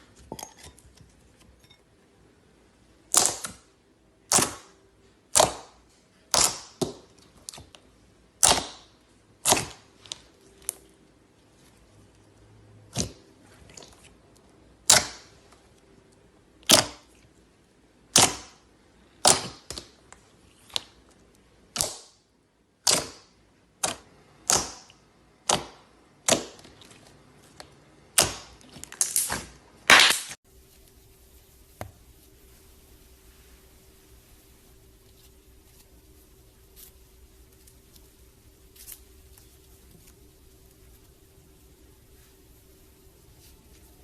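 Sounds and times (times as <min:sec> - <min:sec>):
slime popping and crackling: 0:03.1 - 0:03.5, 0:28.1 - 0:30.4.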